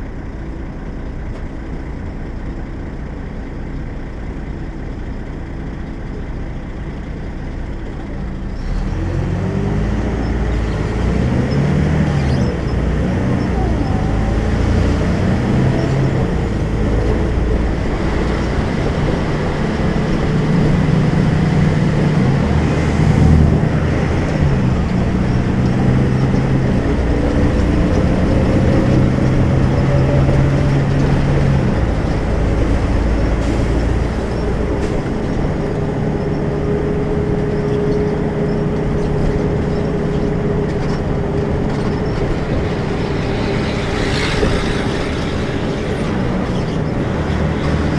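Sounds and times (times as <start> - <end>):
bus diesel engine running: 0.0 - 47.9
steady higher whine: 9.9 - 47.9.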